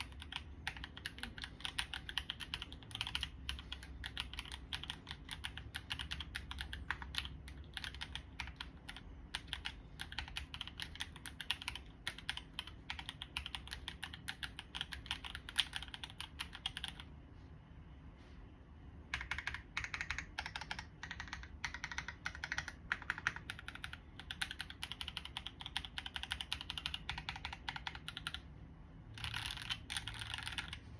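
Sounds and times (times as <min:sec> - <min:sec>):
mechanical keyboard typing: 0:00.0 - 0:17.1, 0:19.1 - 0:28.5, 0:29.1 - 0:30.9.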